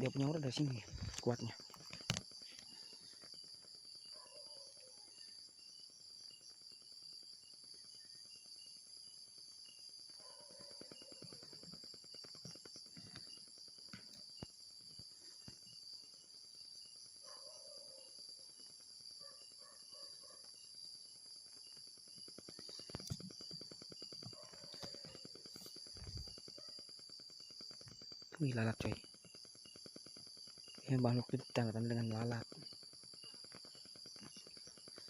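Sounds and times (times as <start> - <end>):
crickets trilling: 0.0 - 35.0.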